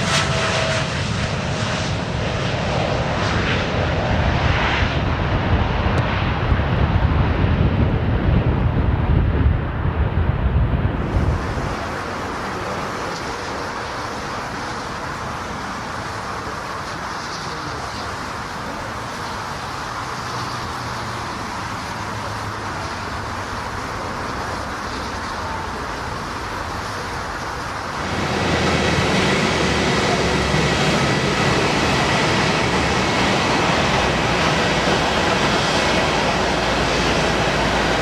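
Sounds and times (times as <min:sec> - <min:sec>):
jet engines rushing: 0:00.0 - 0:38.0.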